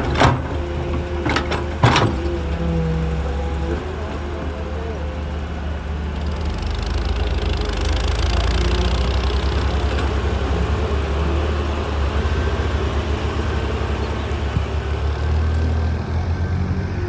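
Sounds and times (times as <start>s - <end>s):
excavator diesel engine rumbling: 0.0s - 17.0s.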